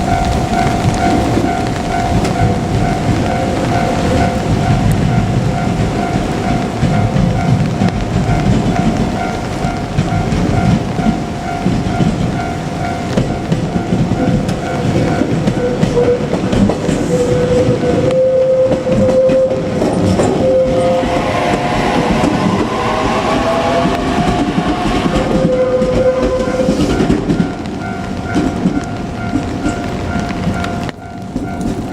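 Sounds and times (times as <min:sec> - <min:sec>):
level crossing warning bell: 0:00.0 - 0:31.9
train wheels clattering over rail joints: 0:00.0 - 0:31.9
train motor whine: 0:13.0 - 0:31.9.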